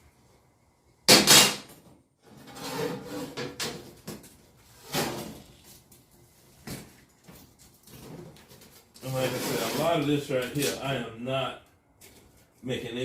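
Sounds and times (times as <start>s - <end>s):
rubbing and scraping: 2.3s - 3.6s, 8.0s - 10.8s.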